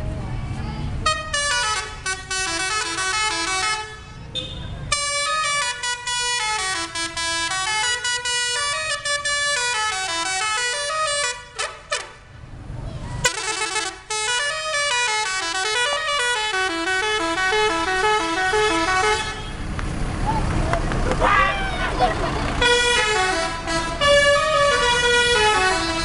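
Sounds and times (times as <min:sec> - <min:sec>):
musical air horn tune: 0:13.2 - 0:19.6, 0:22.6 - 0:26.0.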